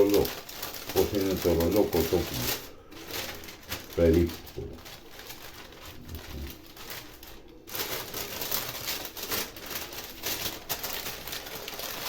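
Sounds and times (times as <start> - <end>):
baking paper rustling and crinkling: 0.0 - 12.0.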